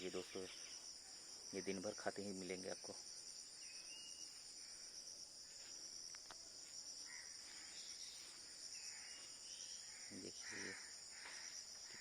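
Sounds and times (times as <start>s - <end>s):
insects trilling: 0.0s - 12.0s.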